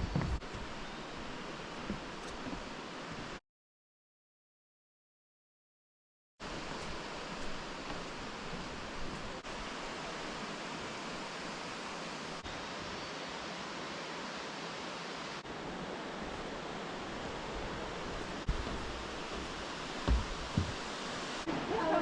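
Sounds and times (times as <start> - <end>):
waterfall rushing: 6.4 - 22.0.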